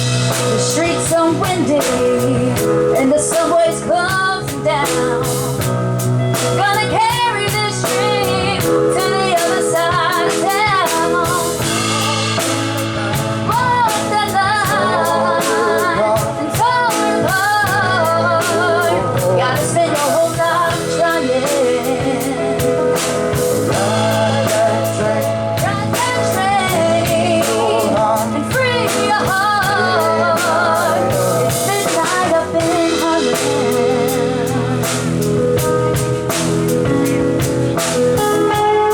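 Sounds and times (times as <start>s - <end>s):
live soul band playing: 0.0s - 38.9s
lead singer's wavering melody: 6.3s - 37.4s.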